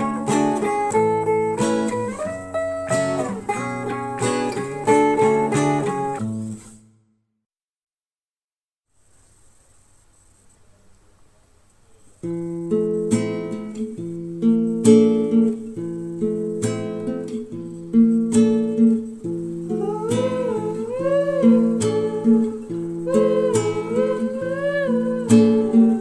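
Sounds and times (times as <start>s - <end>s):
acoustic guitar strumming: 0.0s - 6.9s, 12.3s - 26.0s
person singing gliding vocal line: 19.6s - 26.0s.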